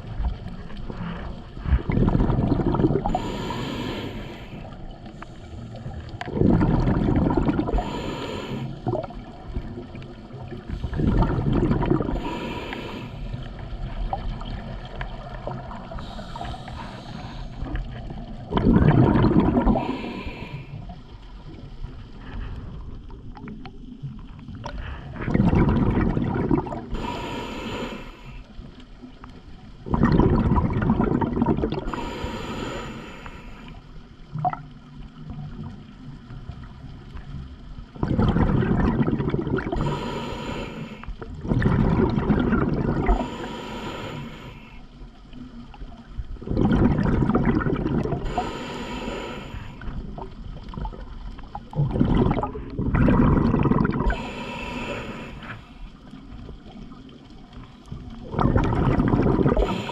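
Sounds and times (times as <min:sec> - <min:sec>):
exhaled bubbles rushing: 0:00.0 - 0:21.8, 0:23.2 - 0:27.2, 0:29.7 - 0:32.2, 0:33.5 - 0:35.9, 0:37.8 - 0:59.9
breathing through regulator: 0:02.7 - 0:05.7, 0:06.8 - 0:08.9, 0:10.7 - 0:13.5, 0:15.8 - 0:17.8, 0:18.7 - 0:20.9, 0:26.2 - 0:28.5, 0:31.3 - 0:33.8, 0:39.5 - 0:41.3, 0:42.0 - 0:44.9, 0:47.5 - 0:50.0, 0:52.2 - 0:56.0, 0:59.1 - 0:59.9.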